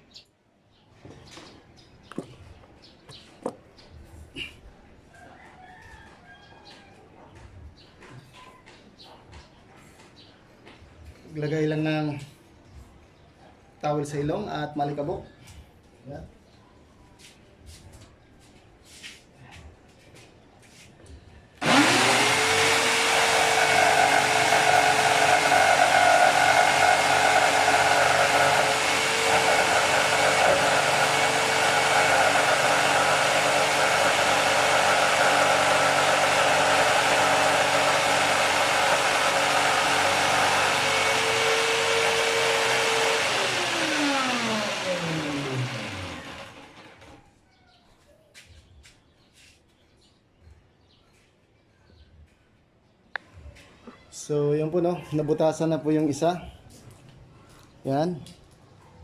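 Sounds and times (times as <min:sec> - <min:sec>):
power tool cutting wood: 0:21.6 - 0:47.2.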